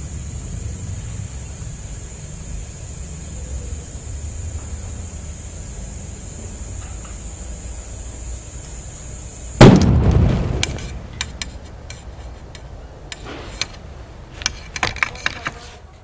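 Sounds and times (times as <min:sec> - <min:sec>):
steady high hiss: 0:00.0 - 0:16.0
air spring bursting bang: 0:09.6 - 0:11.7
small clicks and rattles: 0:14.4 - 0:15.6.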